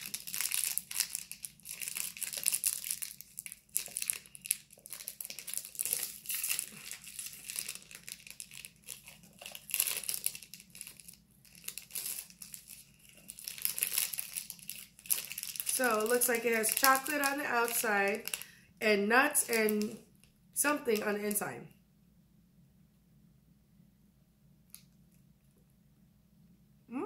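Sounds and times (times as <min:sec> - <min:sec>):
plastic wrapper crinkling: 0:00.0 - 0:18.6, 0:19.2 - 0:21.4.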